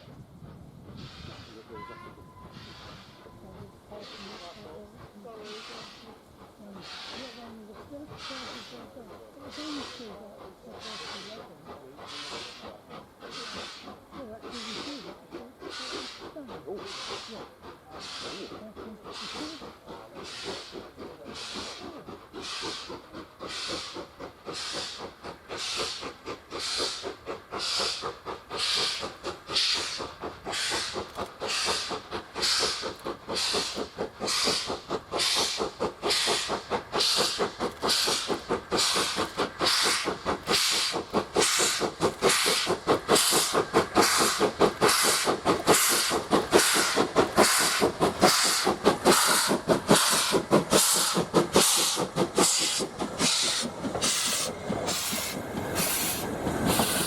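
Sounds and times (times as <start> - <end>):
steam locomotive chuffing: 0.0 - 57.0.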